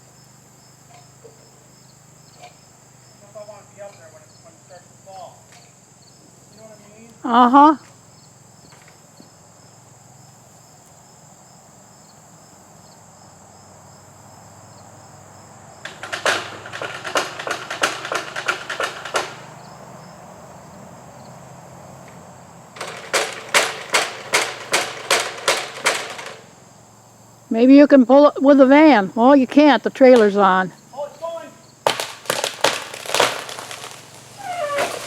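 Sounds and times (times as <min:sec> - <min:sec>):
insects buzzing: 0:00.0 - 0:35.0
hand saw cutting tree limb: 0:15.9 - 0:19.6, 0:31.8 - 0:35.0.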